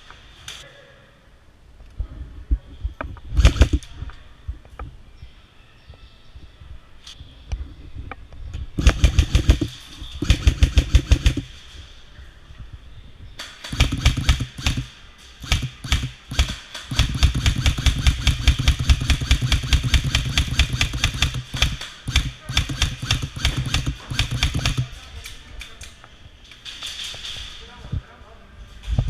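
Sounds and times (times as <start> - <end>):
airsoft rifles firing full auto: 3.4 - 3.8, 8.8 - 11.6, 13.4 - 25.1.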